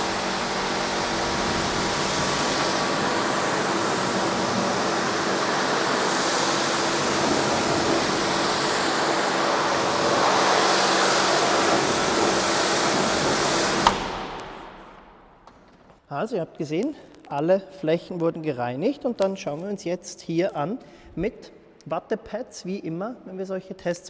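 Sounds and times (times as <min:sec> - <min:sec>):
pressure washer spray hissing: 0:00.0 - 0:15.2
pump motor hum: 0:00.0 - 0:15.2.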